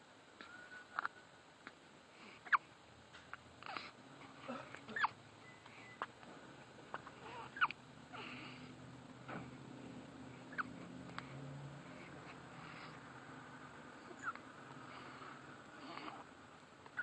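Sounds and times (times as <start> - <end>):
hiccups: 4.5 - 5.2, 7.2 - 7.8, 14.2 - 14.4.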